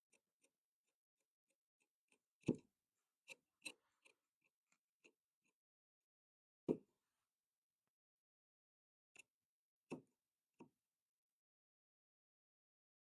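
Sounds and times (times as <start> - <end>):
small clicks and taps of tools: 0.0 - 5.6, 9.1 - 9.3, 9.9 - 10.8.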